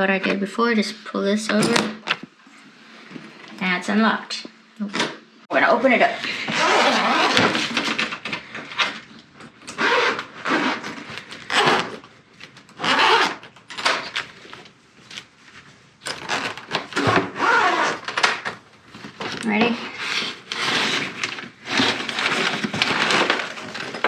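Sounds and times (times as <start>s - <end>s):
suitcase zipper unzipping: 6.5s - 7.7s, 9.8s - 12.0s, 12.8s - 13.4s, 16.2s - 18.1s.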